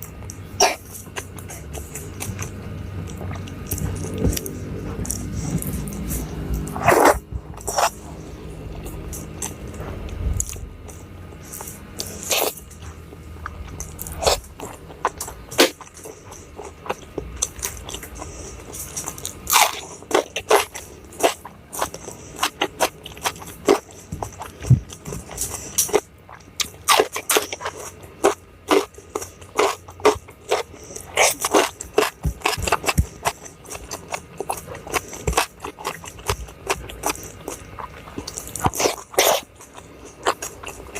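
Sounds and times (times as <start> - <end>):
crunchy chewing: 0.0 - 40.9
scrapes: 3.8 - 8.4.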